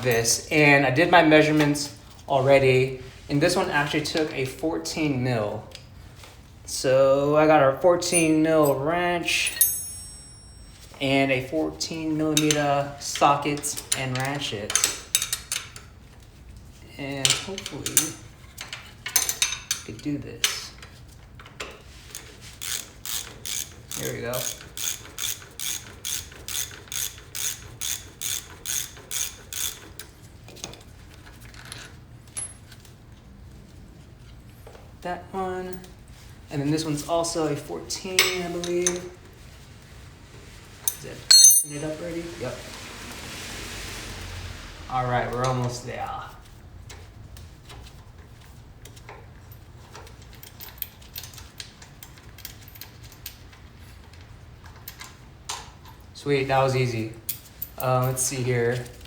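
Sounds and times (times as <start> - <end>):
wrench ratchet clicking: 22.6 - 29.8.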